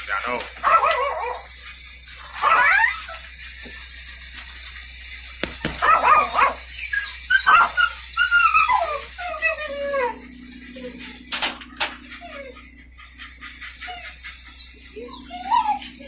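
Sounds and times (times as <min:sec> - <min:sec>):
dog whining and yelping: 0:00.6 - 0:16.0.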